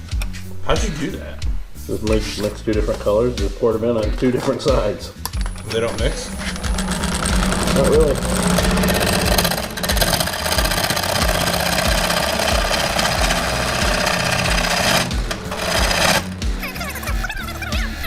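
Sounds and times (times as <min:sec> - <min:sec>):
background music with steady beat: 0:00.0 - 0:18.0
lathe gouge scraping wood: 0:05.5 - 0:16.4.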